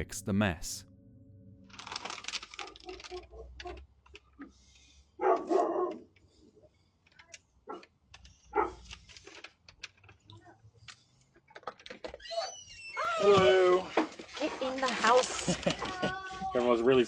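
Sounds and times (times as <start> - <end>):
dog barking: 5.2 - 6.0, 8.5 - 8.8.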